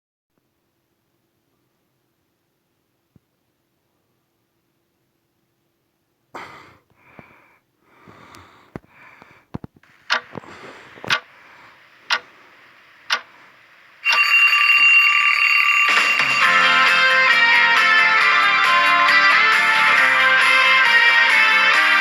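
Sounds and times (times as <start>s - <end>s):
soft rustles and clicks: 8.1s - 13.9s
clock ticking: 10.0s - 14.3s
alarm clock ringing: 14.0s - 18.2s
guitar music: 16.0s - 22.0s.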